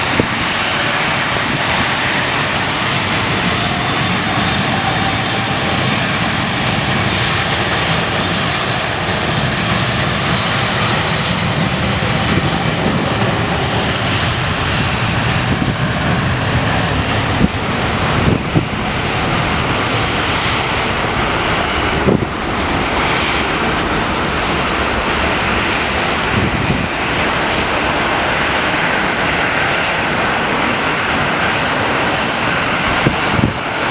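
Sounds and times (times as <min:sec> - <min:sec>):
jet engines at takeoff: 0:00.0 - 0:33.9
faint gliding tones: 0:13.2 - 0:29.6.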